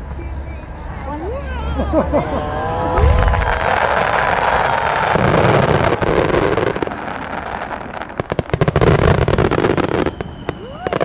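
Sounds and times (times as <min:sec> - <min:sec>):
fireworks crackling hiss: 0:02.8 - 0:11.0
fireworks sharp cracks: 0:03.0 - 0:11.0.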